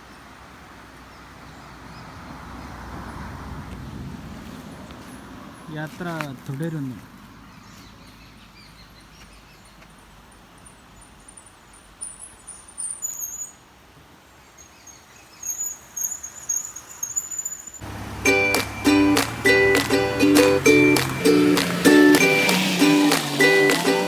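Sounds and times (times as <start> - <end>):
insects chirping: 9.7 - 22.8.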